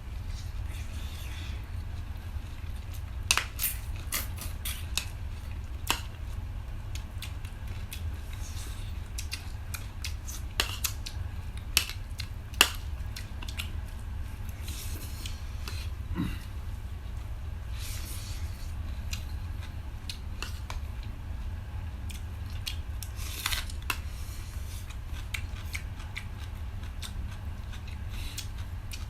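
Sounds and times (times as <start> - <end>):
steady low hum: 0.0 - 29.0
eating clicks and crunches: 1.9 - 17.3, 22.1 - 24.1, 24.8 - 29.0.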